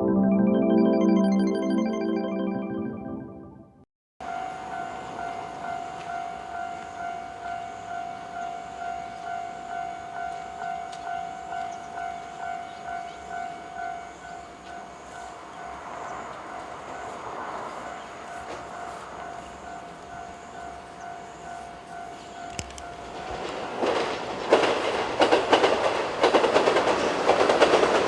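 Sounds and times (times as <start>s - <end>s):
level crossing bell ringing: 0.0s - 3.4s
electric train rumble: 4.3s - 28.0s.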